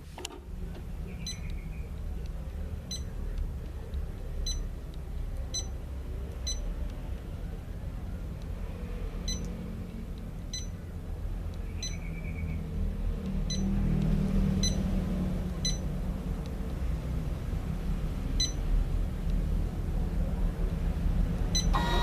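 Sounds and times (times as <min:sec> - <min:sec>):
steady low hum: 0:00.0 - 0:22.0
short electronic key-press beeps: 0:01.2 - 0:01.6, 0:02.9 - 0:03.1, 0:04.4 - 0:04.7, 0:05.5 - 0:05.8, 0:06.4 - 0:06.7, 0:10.5 - 0:10.8, 0:11.6 - 0:12.4, 0:15.6 - 0:15.8, 0:18.4 - 0:18.6, 0:21.6 - 0:21.8.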